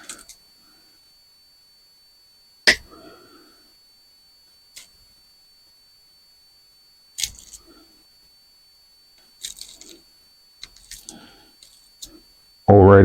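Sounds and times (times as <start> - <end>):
wire cutters snipping wires: 7.2 - 7.6.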